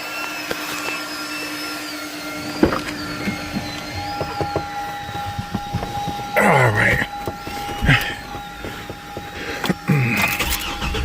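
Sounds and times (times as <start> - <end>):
power steering pump whine: 0.0 - 11.0
car engine running: 2.1 - 11.0.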